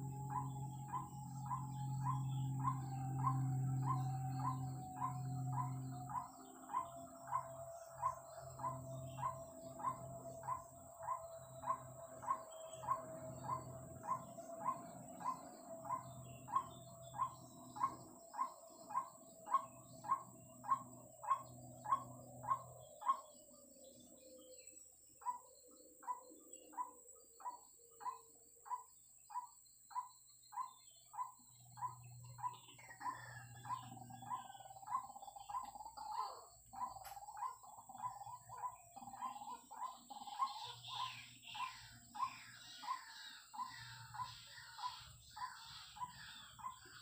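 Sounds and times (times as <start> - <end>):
steady falling drone: 0.0 - 22.4
low hum: 0.0 - 22.5.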